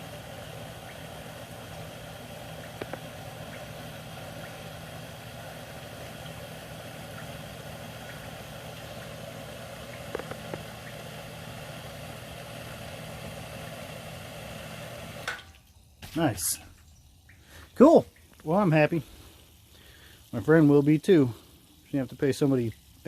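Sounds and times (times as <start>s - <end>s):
sump pump motor humming: 0.0s - 23.0s
small clicks: 2.6s - 3.6s.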